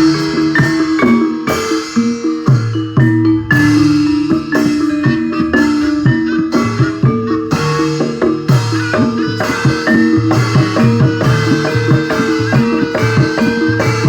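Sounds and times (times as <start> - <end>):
hand drum beats: 0.0 - 14.0.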